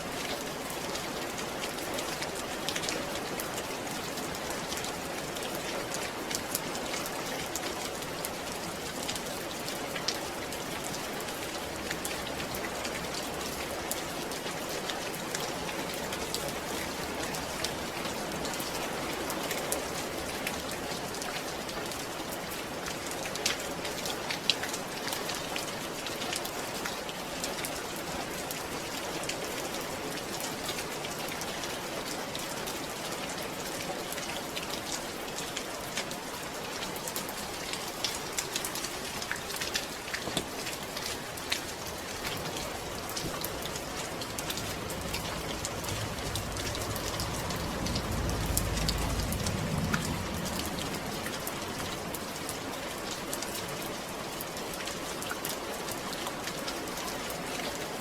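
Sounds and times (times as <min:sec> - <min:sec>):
steady rain falling: 0:00.0 - 0:58.0
low rumble: 0:42.7 - 0:52.1.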